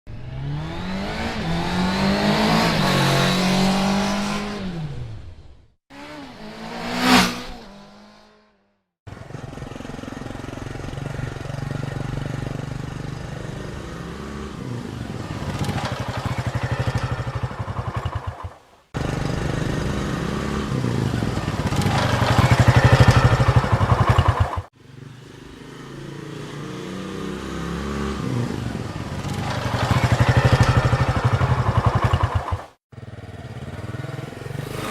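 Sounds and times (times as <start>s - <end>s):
motorcycle passing by: 0.1s - 5.3s, 5.9s - 34.9s
motorcycle engine running: 9.1s - 34.9s.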